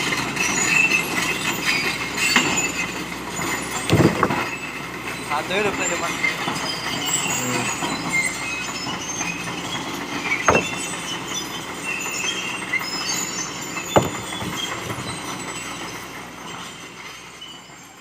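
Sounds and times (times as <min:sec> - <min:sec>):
excavator squealing and creaking: 0:00.0 - 0:18.0
sharp metal clanks: 0:10.4 - 0:11.3, 0:13.3 - 0:15.9.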